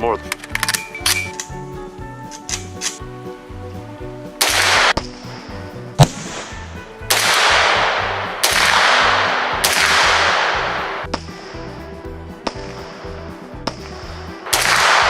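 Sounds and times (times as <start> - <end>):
background music: 0.0 - 15.0
rifle shots with echo: 4.4 - 5.0, 6.0 - 11.4, 14.5 - 15.0.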